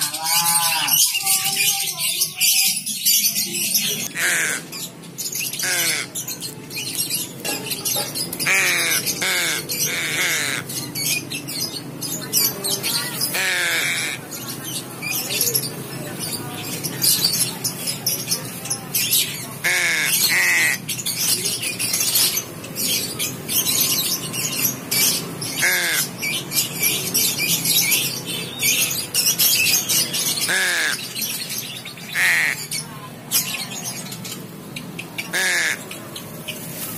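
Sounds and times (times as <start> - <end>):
crow harsh calls: 0.0 - 2.8, 4.0 - 14.5, 19.0 - 34.1, 35.2 - 36.0.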